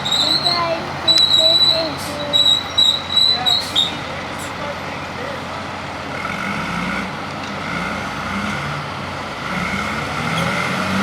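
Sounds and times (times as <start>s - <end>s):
heavy diesel earthmoving machines: 0.0s - 11.0s.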